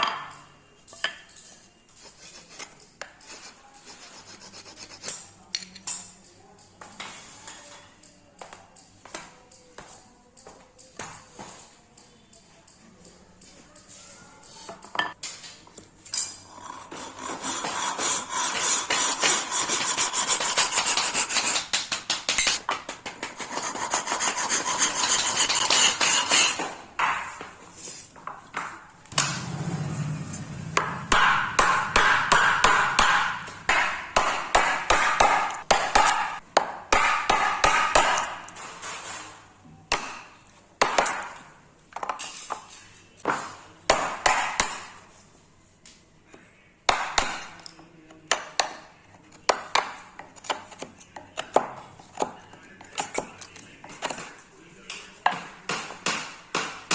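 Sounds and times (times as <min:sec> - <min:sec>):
hand tool scraping wood: 0:02.0 - 0:05.3, 0:16.4 - 0:26.8.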